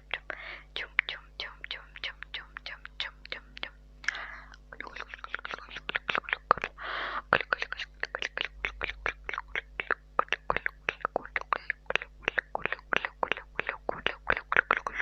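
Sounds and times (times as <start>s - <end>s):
breathy hiss: 0.3s - 0.7s, 6.8s - 7.3s.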